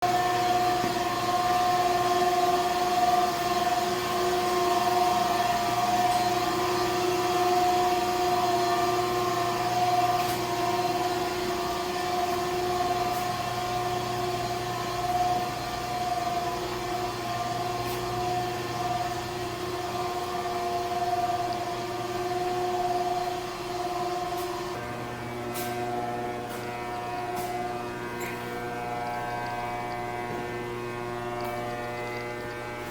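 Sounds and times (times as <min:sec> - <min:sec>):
machine drone with humming tones: 0:00.0 - 0:32.9.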